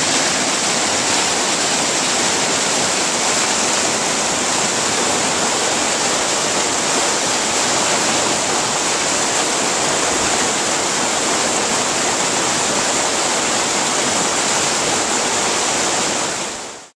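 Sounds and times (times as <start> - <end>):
creek rushing over rocks: 0.0 - 16.9.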